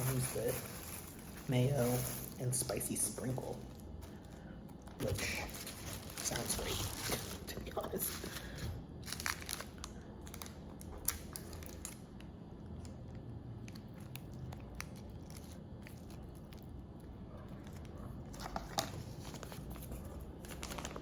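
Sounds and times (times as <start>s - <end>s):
packaging crinkling: 0.0s - 21.0s
steady low hum: 0.0s - 21.0s.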